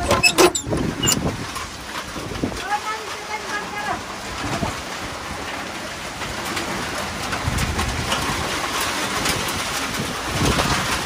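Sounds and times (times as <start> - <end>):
wind rumbling on microphone: 0.0 - 2.8, 4.2 - 11.0
rain: 0.0 - 11.0.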